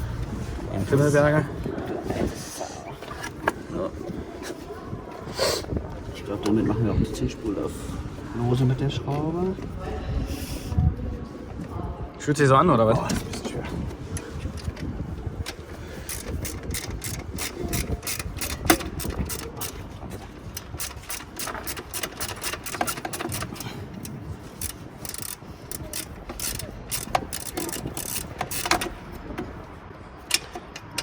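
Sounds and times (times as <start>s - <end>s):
ratchet wrench clicking: 15.4s - 29.5s.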